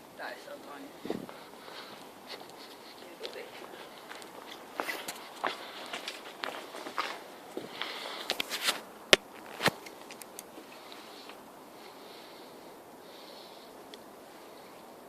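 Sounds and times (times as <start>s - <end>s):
soft breathing and sniffing: 0.4s - 15.0s
sharp clicks: 9.1s - 10.5s
small ticks: 9.4s - 11.4s.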